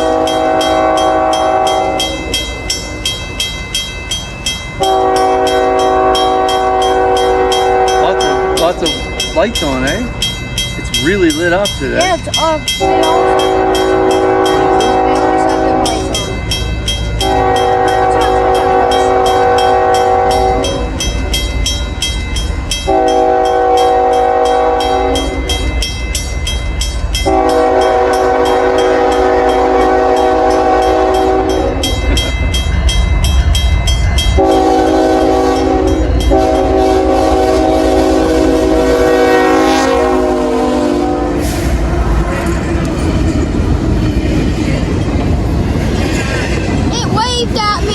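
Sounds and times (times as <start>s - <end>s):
locomotive chime air horn blasts: 0.0s - 2.3s, 4.8s - 8.9s, 12.7s - 16.4s, 17.2s - 21.0s, 22.9s - 25.6s, 27.2s - 31.9s, 34.4s - 41.8s
low rumble of train: 0.0s - 47.9s.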